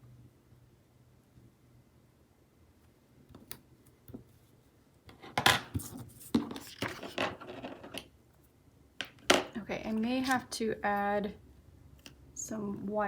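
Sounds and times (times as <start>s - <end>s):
paper rustling and scraping: 5.7s - 7.9s.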